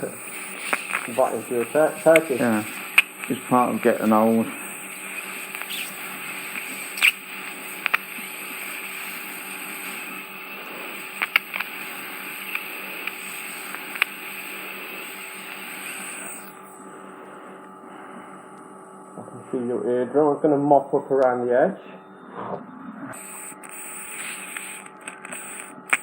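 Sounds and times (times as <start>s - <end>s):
sharp crackles and pops: 0.0s - 16.6s, 23.2s - 26.0s
suction tip hissing: 0.0s - 17.1s, 23.2s - 26.0s.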